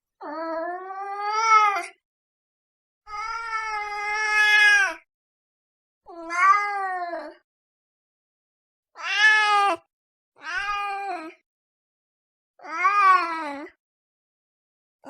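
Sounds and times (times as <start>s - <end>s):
cat meowing: 9.0s - 9.8s, 10.4s - 11.1s.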